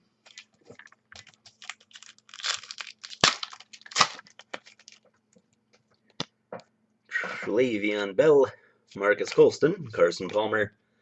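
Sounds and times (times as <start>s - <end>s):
wrapper crinkling and tearing: 0.3s - 5.1s
wrapper snapping: 0.3s - 5.1s.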